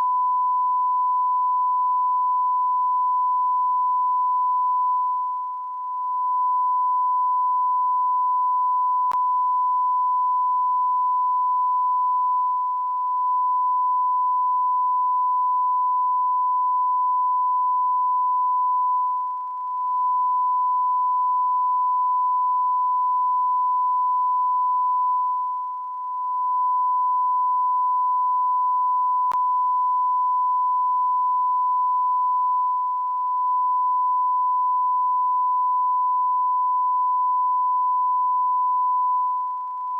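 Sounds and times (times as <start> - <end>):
continuous electronic beep: 25.2 - 26.6.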